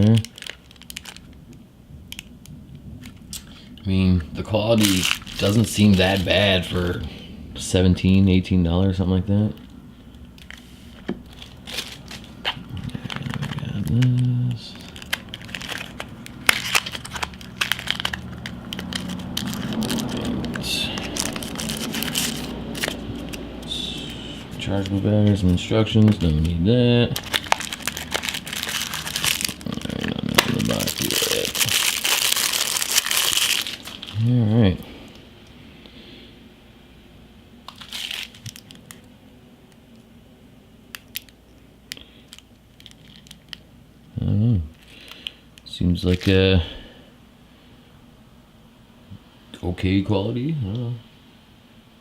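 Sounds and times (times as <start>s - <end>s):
packaging crinkling: 0.0s - 3.5s, 4.6s - 6.9s, 9.6s - 34.3s, 37.6s - 39.2s, 40.9s - 43.7s, 44.7s - 46.4s.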